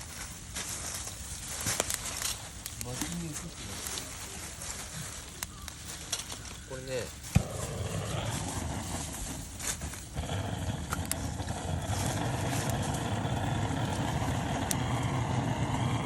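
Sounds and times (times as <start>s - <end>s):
gas torch flame rushing: 7.3s - 16.0s.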